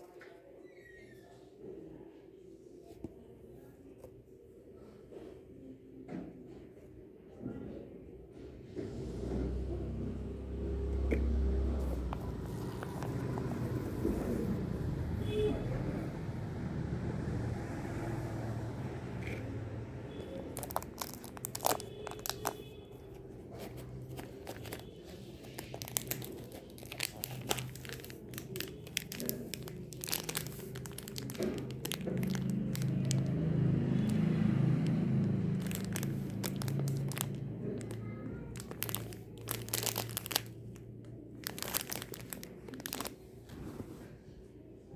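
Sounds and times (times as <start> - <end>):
packaging crinkling: 11.8 - 14.2, 20.3 - 43.2.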